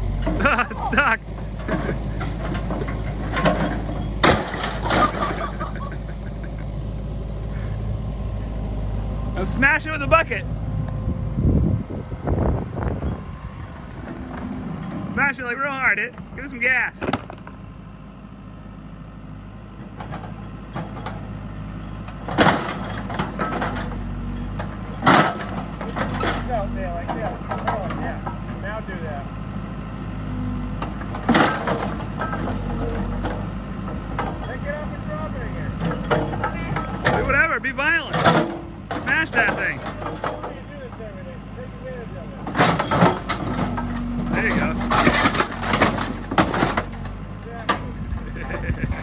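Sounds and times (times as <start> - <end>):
metal knocks and clanks: 0.0 - 6.0, 9.4 - 17.6, 22.0 - 28.4, 30.3 - 34.6, 35.7 - 41.1, 42.4 - 49.0
excavator engine running: 0.0 - 49.0
bucket smashing lawn mower: 0.2 - 5.9, 16.9 - 17.5, 22.2 - 26.7, 31.1 - 33.2, 36.9 - 40.6, 42.4 - 49.0.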